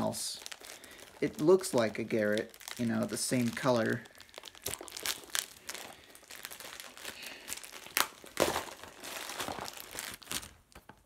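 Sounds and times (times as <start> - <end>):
packaging crinkling and clicking: 0.4 - 11.0
packaging snaps: 2.3 - 11.0.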